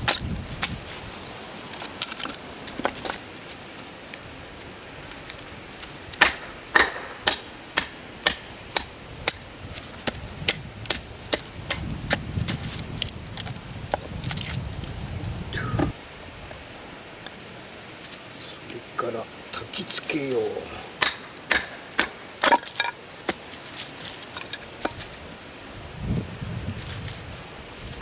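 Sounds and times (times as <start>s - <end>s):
knife chopping firewood: 6.1s - 14.5s, 20.9s - 25.2s.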